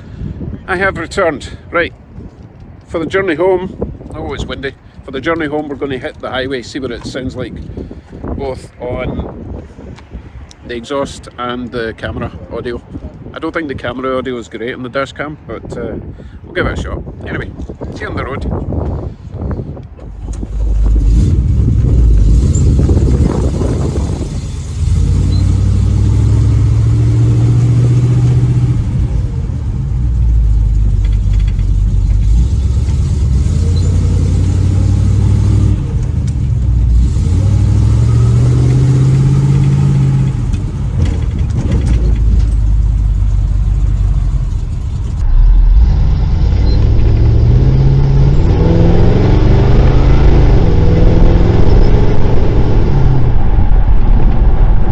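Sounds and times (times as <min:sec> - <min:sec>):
car engine accelerating through gears: 0:20.0 - 0:54.5.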